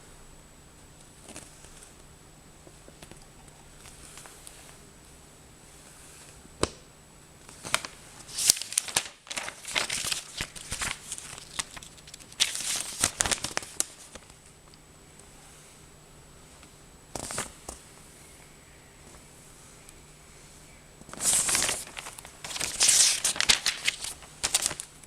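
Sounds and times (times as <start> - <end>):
packaging crinkling and clicking: 21.1 - 24.9.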